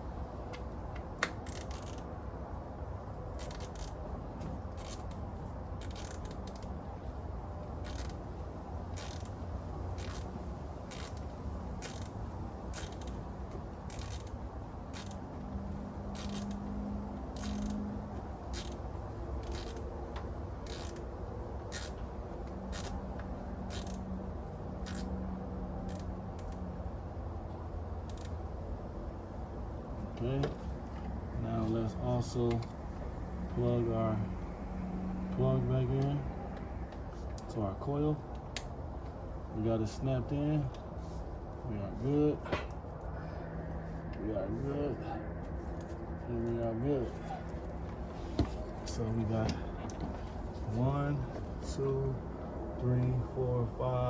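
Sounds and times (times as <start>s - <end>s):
steady low hum: 0.0s - 54.0s
hand ratchet clicking: 0.5s - 2.1s, 3.4s - 4.0s, 4.7s - 5.2s, 5.8s - 6.8s, 7.8s - 8.2s, 8.9s - 13.2s, 13.8s - 15.2s, 16.1s - 16.7s, 17.3s - 17.8s, 18.5s - 19.9s, 20.6s - 21.1s, 21.7s - 23.0s, 23.7s - 24.1s, 24.8s - 25.1s, 25.8s - 26.6s, 28.0s - 28.3s.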